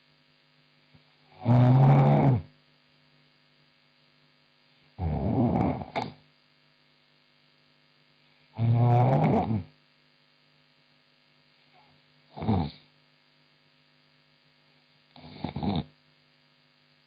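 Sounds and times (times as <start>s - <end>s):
faint electrical hum: 0.0s - 17.0s
woman snoring: 1.3s - 2.5s, 5.0s - 6.2s, 8.6s - 9.7s, 12.3s - 12.9s, 15.2s - 15.9s.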